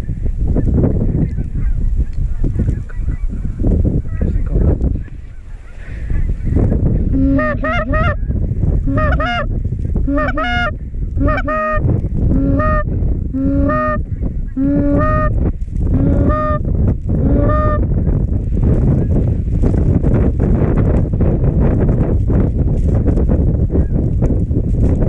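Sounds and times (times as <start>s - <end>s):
low wind rumble: 0.0s - 25.0s
geese honking: 5.0s - 8.2s, 8.9s - 9.5s, 10.1s - 11.8s, 12.4s - 12.9s, 13.6s - 15.4s, 16.0s - 16.6s.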